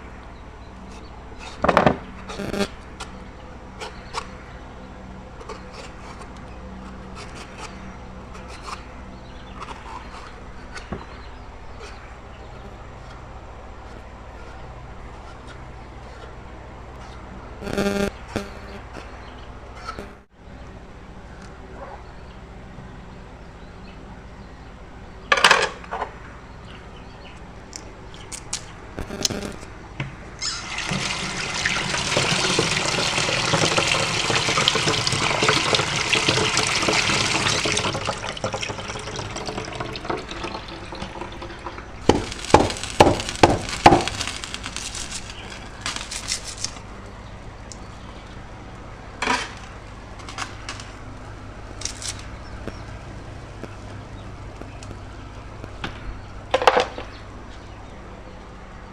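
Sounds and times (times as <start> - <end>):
stream of water running: 30.4 - 46.8.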